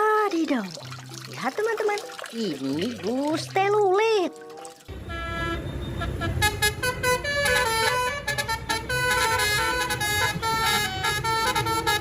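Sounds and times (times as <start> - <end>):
bus horn playing melodic tune: 4.9 - 12.0.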